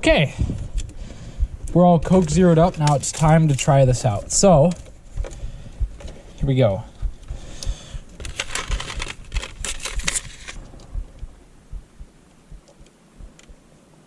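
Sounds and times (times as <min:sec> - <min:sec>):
plastic packaging crackling: 0:02.1 - 0:04.4, 0:08.1 - 0:10.6.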